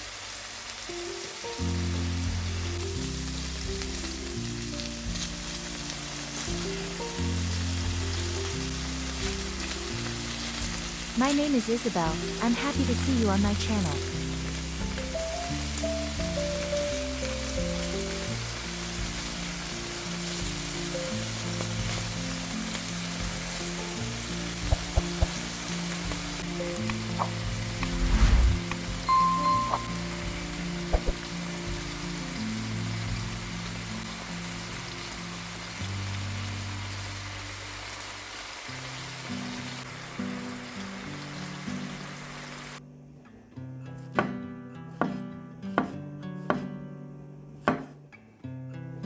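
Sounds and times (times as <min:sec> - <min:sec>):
food sizzling in a pan: 0:00.0 - 0:42.8
soft background music: 0:00.4 - 0:38.0
background music low chords: 0:20.7 - 0:34.0.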